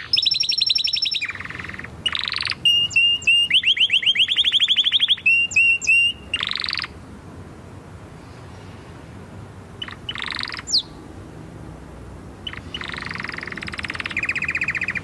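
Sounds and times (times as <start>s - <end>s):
canary singing: 0.0s - 7.0s, 9.8s - 11.1s, 12.4s - 15.0s.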